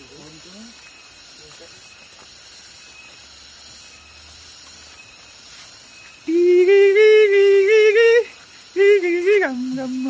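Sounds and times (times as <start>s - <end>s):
steady soft hiss: 0.0s - 10.0s.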